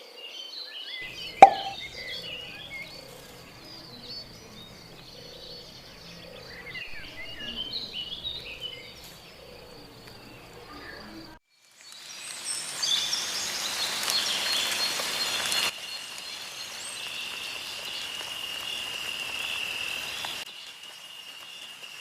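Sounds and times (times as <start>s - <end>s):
small birds chirping: 1.0s - 11.4s.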